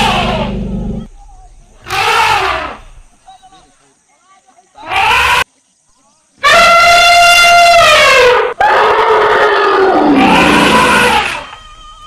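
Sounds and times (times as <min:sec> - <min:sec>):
elephants trumpeting: 0:00.0 - 0:00.7, 0:01.8 - 0:03.0, 0:04.8 - 0:05.4, 0:06.4 - 0:11.5.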